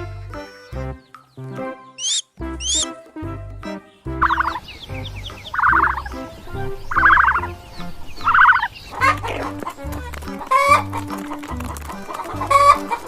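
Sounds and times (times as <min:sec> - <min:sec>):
music with steady beat: 0:00.0 - 0:13.0
chicken clucking and squawking: 0:03.8 - 0:13.0.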